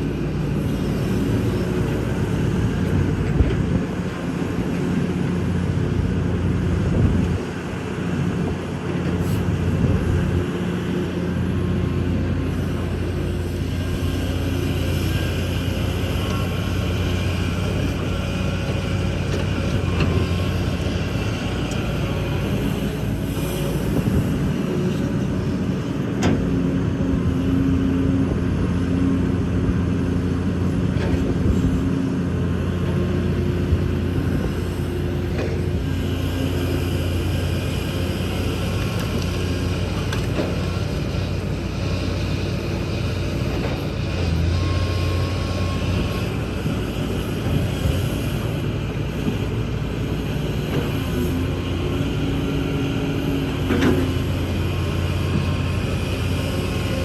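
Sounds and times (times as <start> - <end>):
excavator diesel engine running: 0.0 - 57.0.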